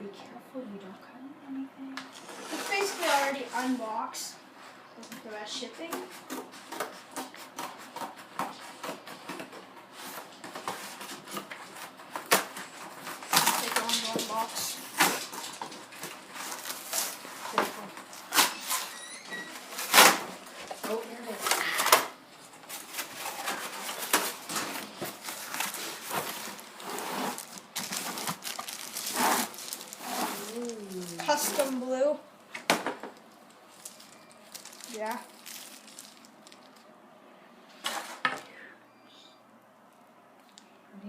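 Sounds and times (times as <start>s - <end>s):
cardboard packaging rustling: 2.2s - 4.0s, 6.0s - 18.9s, 19.5s - 32.2s, 33.2s - 36.8s.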